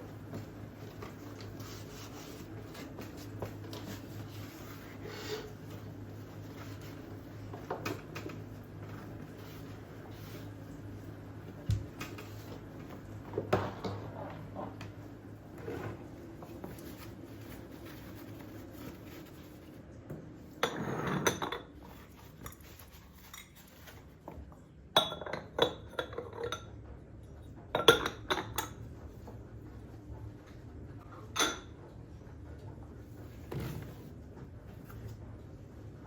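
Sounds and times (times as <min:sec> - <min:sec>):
dishes and cutlery clinking: 0:24.9 - 0:26.7.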